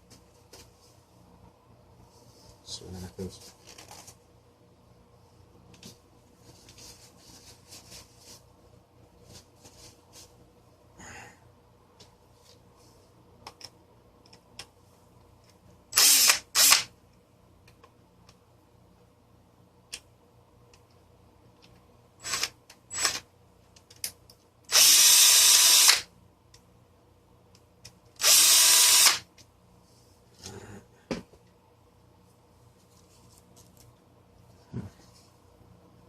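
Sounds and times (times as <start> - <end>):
power drill whirring: 16.0 - 16.9, 22.2 - 23.2, 24.7 - 26.1, 28.2 - 29.2.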